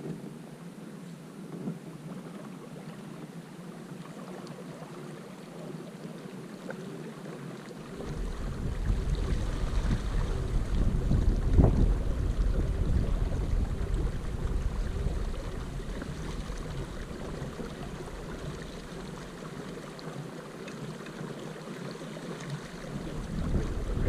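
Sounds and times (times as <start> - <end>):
wind rumbling on microphone: 7.8 - 20.4, 22.4 - 24.0
water washing: 7.8 - 24.0.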